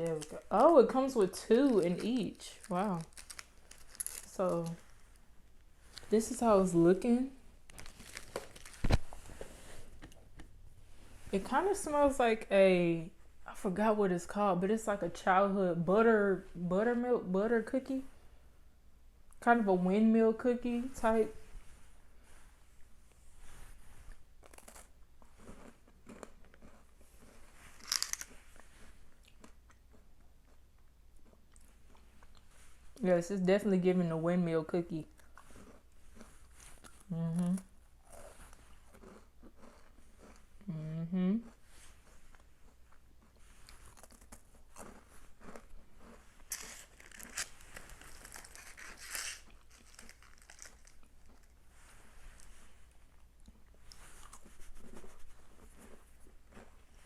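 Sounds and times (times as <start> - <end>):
plastic packet crinkling: 0.0 - 5.2, 7.7 - 9.2, 27.8 - 28.4, 46.5 - 51.5
crunching a crisp cookie: 0.0 - 6.6, 7.6 - 10.4, 24.1 - 33.0, 35.0 - 40.7, 41.4 - 57.0.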